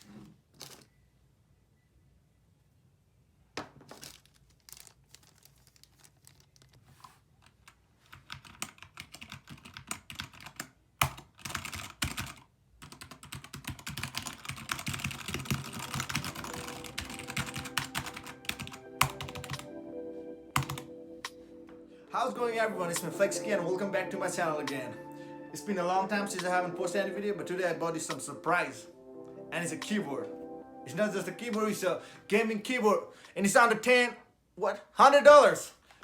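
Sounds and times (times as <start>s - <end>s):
mechanical keyboard clacking: 8.1s - 19.6s, 20.6s - 20.9s
music: 15.2s - 33.1s.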